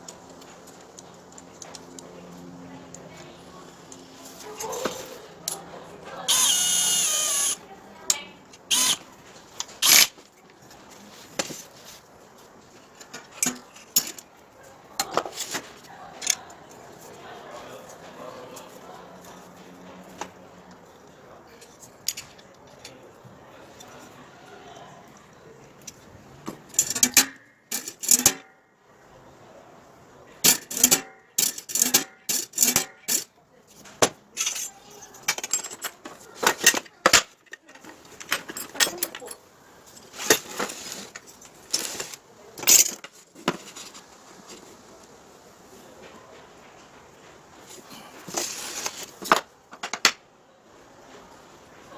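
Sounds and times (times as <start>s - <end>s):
tools knocking and clinking: 26.5s - 28.5s, 30.4s - 33.3s, 34.0s - 39.4s.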